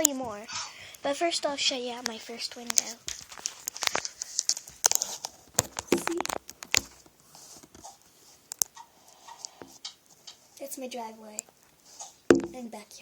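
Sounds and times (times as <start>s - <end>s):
handling clicks and taps: 1.9s - 10.4s, 11.4s - 12.6s.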